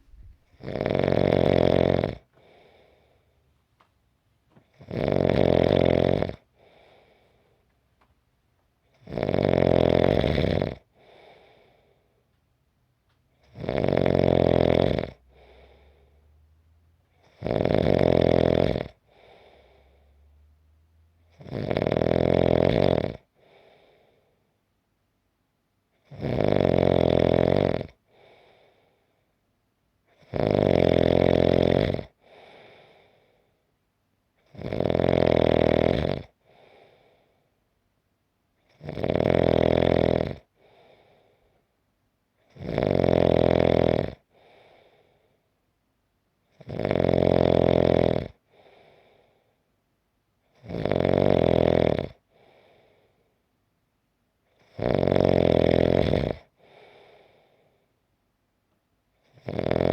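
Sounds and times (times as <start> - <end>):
soft breath: 0.0 - 0.6, 2.3 - 3.6, 6.6 - 7.8, 11.0 - 12.3, 15.2 - 17.2, 19.0 - 20.6, 23.3 - 24.6, 28.1 - 29.4, 32.2 - 33.7, 36.4 - 37.6, 40.5 - 41.7, 44.2 - 45.5, 48.4 - 49.7, 52.2 - 53.4, 56.5 - 58.0
loud snoring: 0.0 - 3.0, 4.7 - 7.2, 9.0 - 11.5, 13.4 - 16.4, 17.1 - 20.4, 21.2 - 23.8, 26.0 - 28.4, 30.1 - 33.0, 34.4 - 36.8, 38.7 - 41.0, 42.5 - 44.7, 46.5 - 49.2, 50.5 - 52.6, 54.6 - 57.1, 59.2 - 59.9.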